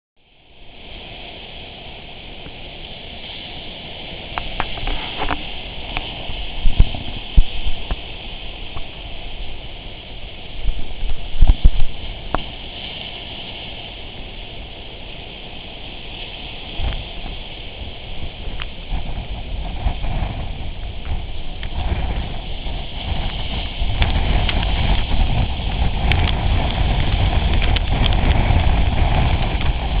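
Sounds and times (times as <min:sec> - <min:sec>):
strong wind buffeting microphone: 0:00.6 - 0:30.0
heavy gust thumps: 0:16.8 - 0:30.0.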